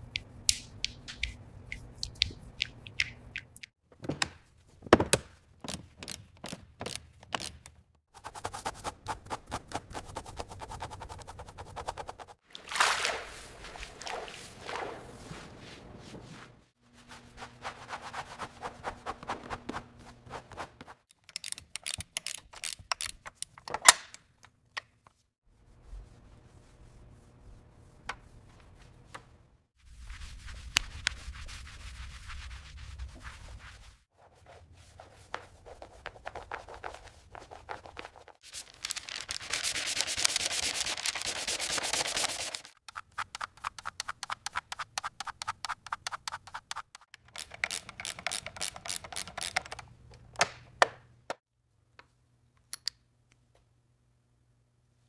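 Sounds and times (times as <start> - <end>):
rapid scraping strokes: 8.2 - 12.4, 38.5 - 47.1.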